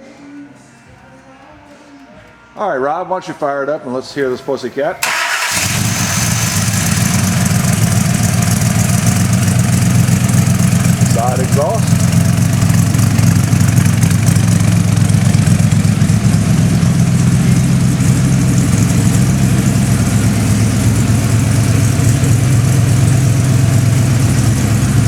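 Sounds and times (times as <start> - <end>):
car engine idling loudly: 5.0 - 25.0.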